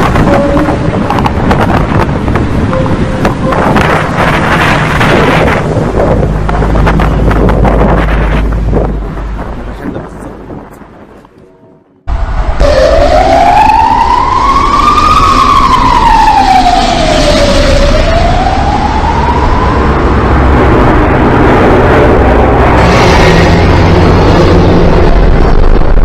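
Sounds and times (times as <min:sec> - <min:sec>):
loud noisy rush: 0:00.0 - 0:11.2, 0:12.1 - 0:26.0
wailing siren-like tone: 0:00.2 - 0:07.0, 0:12.1 - 0:21.0.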